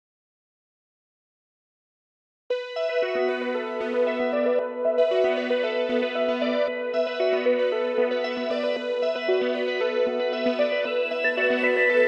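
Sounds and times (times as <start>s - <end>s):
electronic keyboard and synth music: 2.5s - 12.0s.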